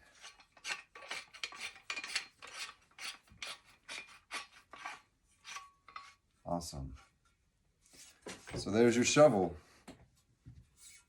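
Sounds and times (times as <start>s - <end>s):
metal threads rasping: 0.0s - 6.2s, 10.8s - 11.0s.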